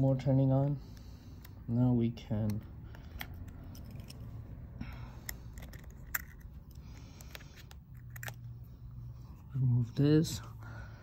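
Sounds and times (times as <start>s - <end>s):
steady low hum: 0.0s - 11.0s
repair tool clicking and scraping: 2.4s - 8.6s.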